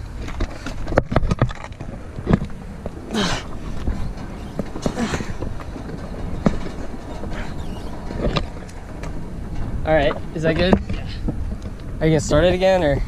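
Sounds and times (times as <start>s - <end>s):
car rolling with clunks: 0.0s - 13.0s.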